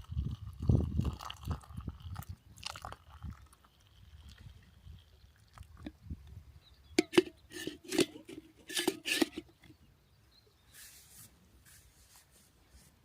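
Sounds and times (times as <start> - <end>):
sharp knocks and scrapes: 7.0 - 9.7
soft rustles: 10.7 - 13.0.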